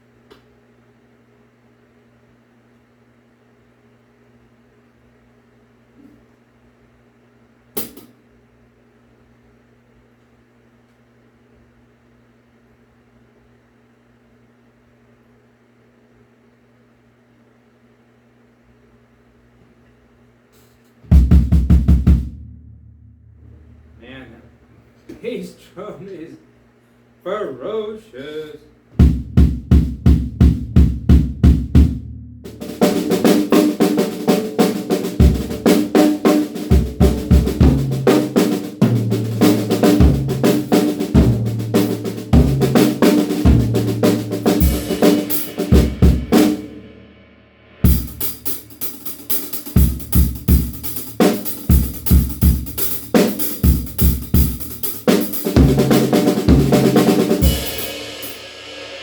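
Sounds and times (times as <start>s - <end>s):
drum kit grooves and fills: 7.8s - 8.1s, 20.6s - 24.4s, 28.9s - 59.0s
bass drum strokes: 21.1s - 24.1s, 29.0s - 33.2s, 36.7s - 59.0s.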